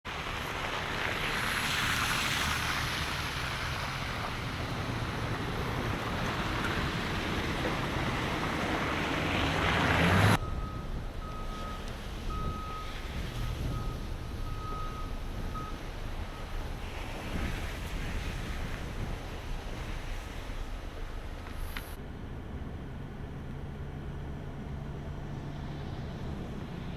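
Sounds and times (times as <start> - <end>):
wind rushing across microphone: 2.7 - 22.0.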